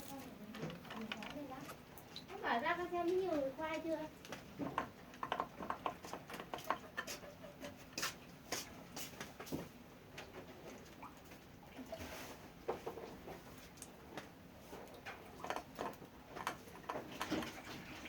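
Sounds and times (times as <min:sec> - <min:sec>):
rabbits moving in cage: 0:03.0 - 0:18.0.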